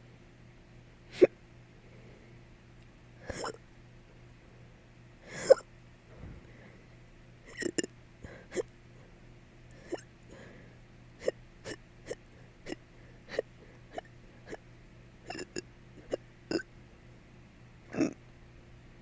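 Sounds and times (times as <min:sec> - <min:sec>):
person hiccuping: 0:03.3 - 0:03.6, 0:05.3 - 0:05.7, 0:07.5 - 0:07.9, 0:09.8 - 0:10.1, 0:11.2 - 0:14.6, 0:15.3 - 0:16.7, 0:17.9 - 0:18.2.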